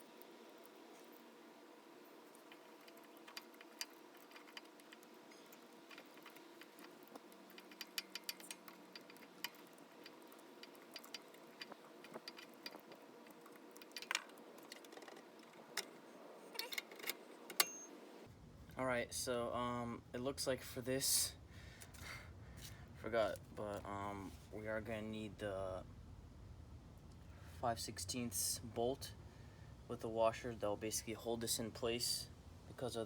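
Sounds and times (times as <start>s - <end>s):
low steady hum: 0.0s - 33.0s
small metal clicks and taps: 2.3s - 15.9s.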